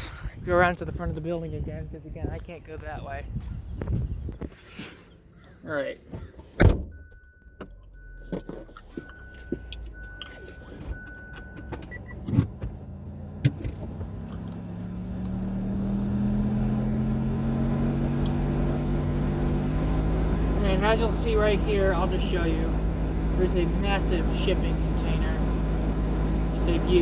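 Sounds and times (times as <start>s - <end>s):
car door thumping shut: 6.2s - 7.0s
car warning chime beeping: 6.9s - 12.2s
car engine accelerating: 7.8s - 27.0s.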